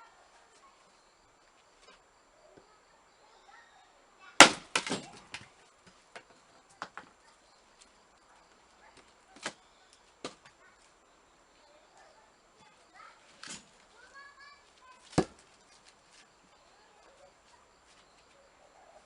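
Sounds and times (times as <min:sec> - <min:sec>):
axe splitting firewood: 0:04.4 - 0:05.5, 0:09.0 - 0:09.6, 0:10.2 - 0:10.6, 0:13.3 - 0:13.9, 0:15.0 - 0:15.9
split wood clattering: 0:04.4 - 0:07.2, 0:13.3 - 0:13.9.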